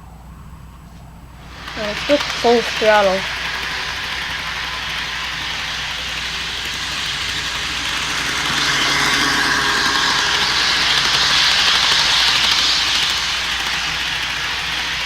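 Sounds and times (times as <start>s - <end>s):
wheels rattling on track: 1.2s - 15.0s
model train motor whir: 1.4s - 15.0s.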